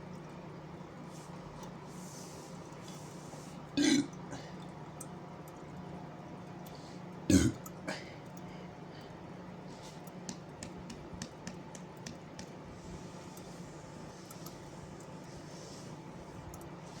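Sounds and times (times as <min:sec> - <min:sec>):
person burping: 0:03.8 - 0:04.2, 0:07.3 - 0:07.7.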